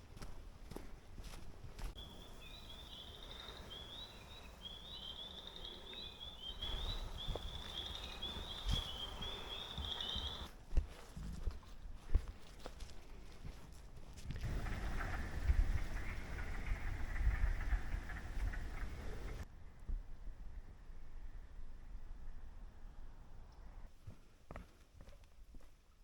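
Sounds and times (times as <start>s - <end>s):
songbird chirping: 1.8s - 10.5s, 14.4s - 19.4s.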